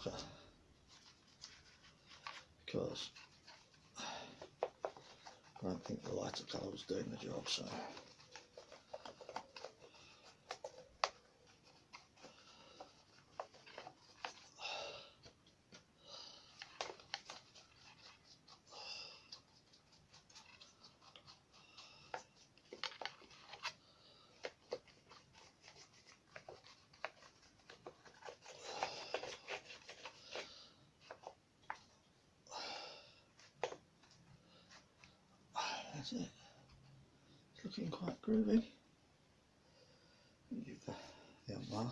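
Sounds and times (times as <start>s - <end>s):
painting clicks and rustles: 0.0s - 32.2s
soft breaths: 0.0s - 38.8s, 39.4s - 41.9s.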